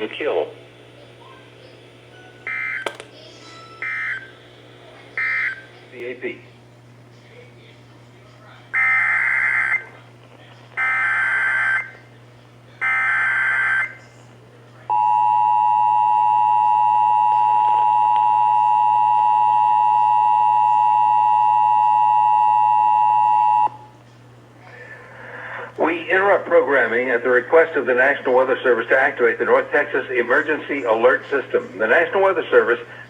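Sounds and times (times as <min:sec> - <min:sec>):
two-tone attention signal: 0:02.1 - 0:04.3, 0:14.9 - 0:23.9.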